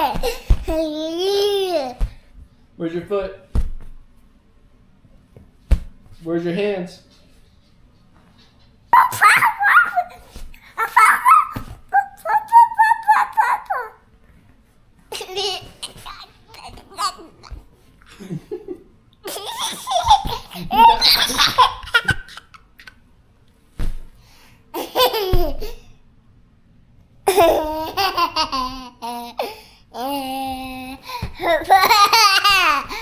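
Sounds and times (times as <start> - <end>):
baby laughing: 9.0 - 14.0, 15.1 - 18.3, 19.2 - 23.0, 24.8 - 25.8, 27.3 - 33.0.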